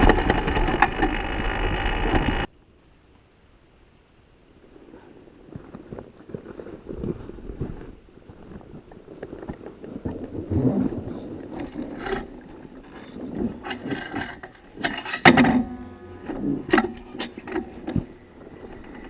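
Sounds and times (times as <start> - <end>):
tyre and wind rumble: 0.0 - 2.5, 4.4 - 19.0.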